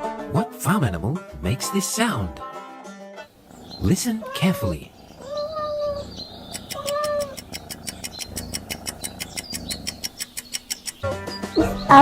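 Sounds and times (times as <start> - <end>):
rapid even ticking: 3.3 - 11.1
cat meowing: 3.5 - 10.2.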